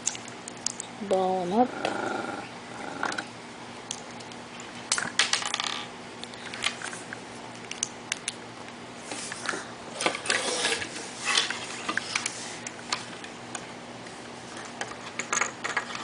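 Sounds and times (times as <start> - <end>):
scraping rustles: 9.0 - 13.3.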